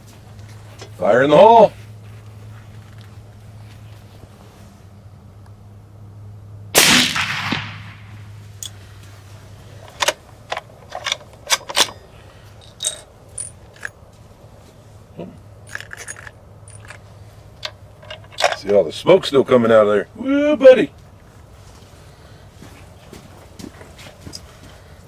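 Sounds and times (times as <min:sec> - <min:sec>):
suppressed rifle shot: 0:06.8 - 0:08.2.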